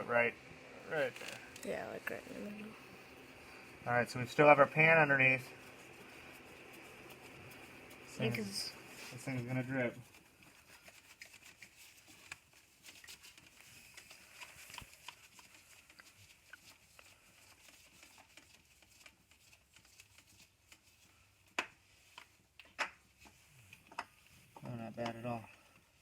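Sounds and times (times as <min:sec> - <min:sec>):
small clicks and taps of handling: 0:21.4 - 0:25.6.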